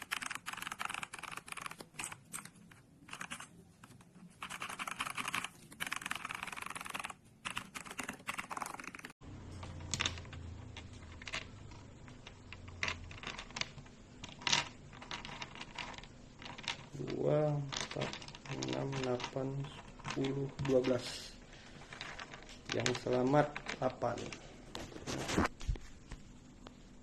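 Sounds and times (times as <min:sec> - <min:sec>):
mechanical keyboard typing: 0:00.0 - 0:09.2.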